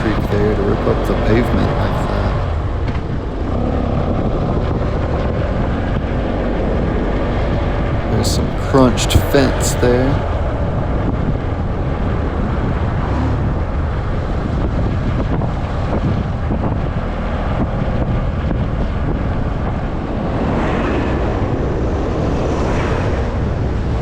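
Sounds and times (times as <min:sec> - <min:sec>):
vehicle cabin road rumble: 0:00.0 - 0:10.8.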